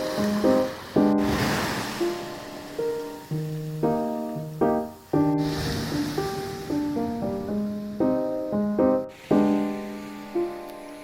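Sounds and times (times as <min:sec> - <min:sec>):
plucked melody: 0:00.0 - 0:11.0.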